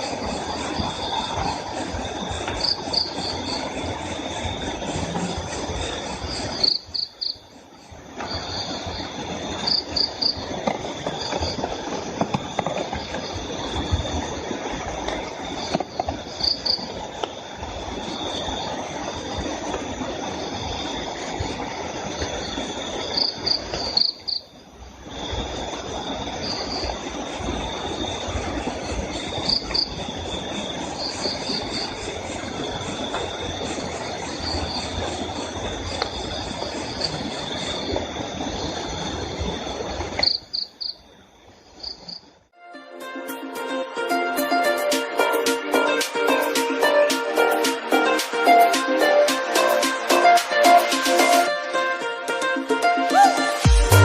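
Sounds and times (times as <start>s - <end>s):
steady insect trill: 0.0s - 42.5s
crickets chirping: 0.0s - 54.0s.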